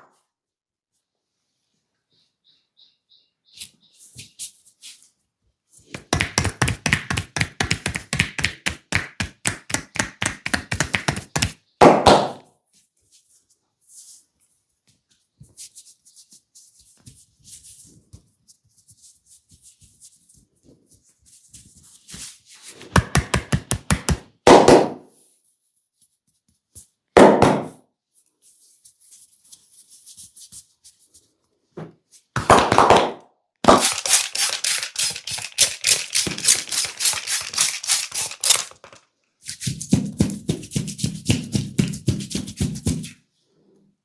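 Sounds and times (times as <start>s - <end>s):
percussive massage strikes: 6.0s - 12.4s, 23.0s - 25.1s, 27.2s - 27.8s, 32.4s - 33.9s.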